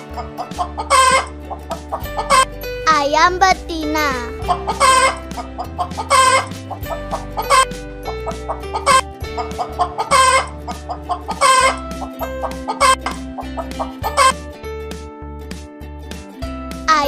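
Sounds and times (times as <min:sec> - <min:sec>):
hen clucking: 0:00.0 - 0:02.5, 0:04.4 - 0:14.4
children's music: 0:00.0 - 0:17.0
hen squawking call: 0:00.9 - 0:01.3, 0:04.7 - 0:05.3, 0:06.0 - 0:06.5, 0:10.0 - 0:10.5.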